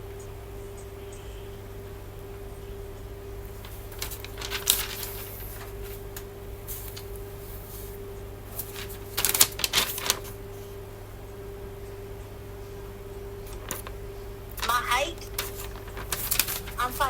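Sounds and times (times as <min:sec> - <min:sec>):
steady low hum: 0:00.0 - 0:17.0
rapid clicking: 0:03.4 - 0:07.3, 0:13.4 - 0:17.0.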